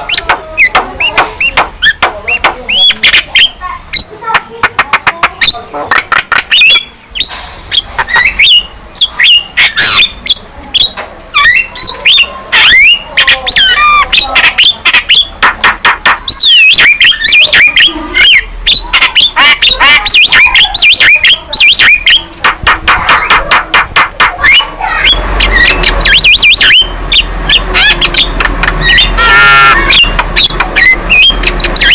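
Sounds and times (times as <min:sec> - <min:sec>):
myna bird singing: 0:00.0 - 0:31.9.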